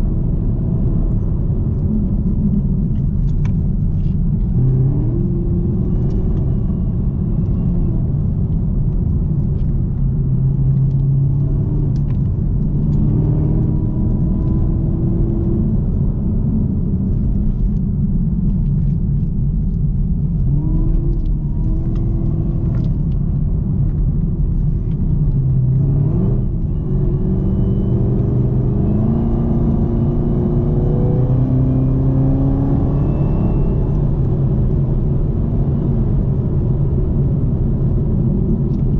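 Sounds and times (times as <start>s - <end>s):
car engine revving: 10.2s - 16.2s, 24.1s - 38.9s.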